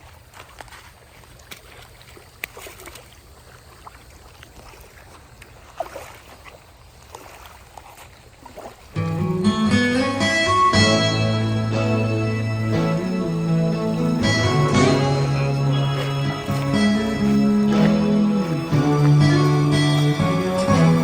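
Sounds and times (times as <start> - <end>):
light water sounds: 0.0 - 9.1, 12.9 - 21.0
loud guitar music: 9.0 - 21.0.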